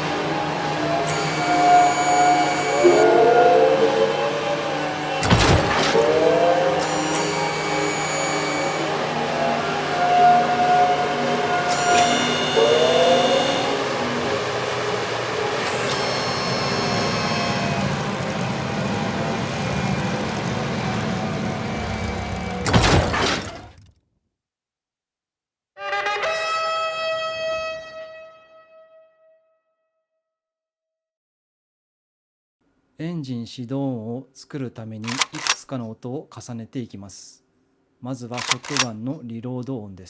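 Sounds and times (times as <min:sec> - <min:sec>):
siren-like rising tone: 0:00.0 - 0:22.6
high ringing tones: 0:01.0 - 0:04.3, 0:05.2 - 0:09.1, 0:10.9 - 0:14.7, 0:15.6 - 0:17.9
noisy vehicle rush: 0:13.8 - 0:23.6.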